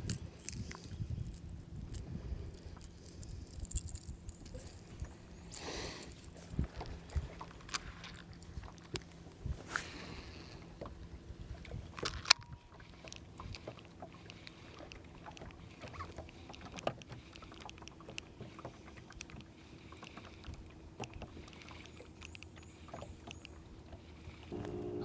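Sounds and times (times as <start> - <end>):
faint steady hum: 19.5 - 25.0.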